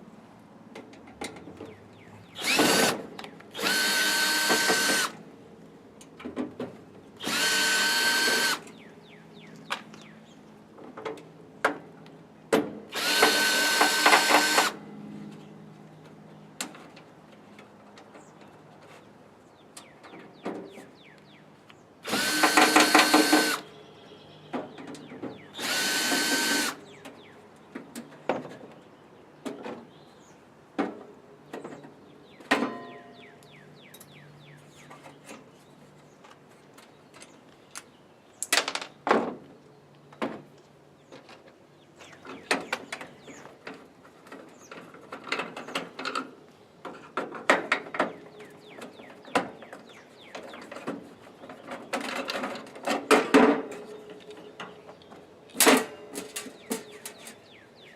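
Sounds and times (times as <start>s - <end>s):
power drill motor whine: 2.4s - 3.0s, 3.6s - 5.2s, 7.2s - 8.6s, 13.0s - 14.8s, 22.0s - 23.6s, 25.6s - 26.8s.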